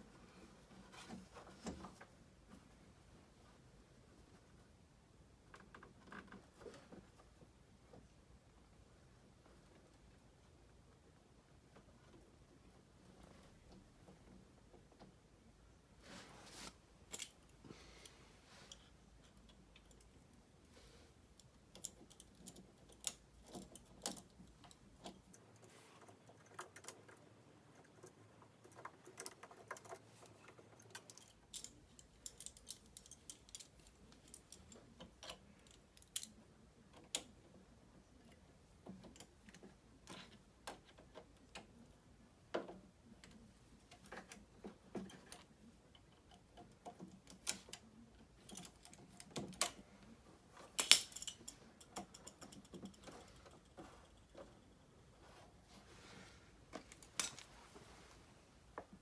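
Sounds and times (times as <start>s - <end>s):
small metal parts clicking: 21.4s - 25.7s, 28.7s - 37.3s, 45.0s - 49.8s, 50.6s - 54.5s, 56.8s - 57.5s.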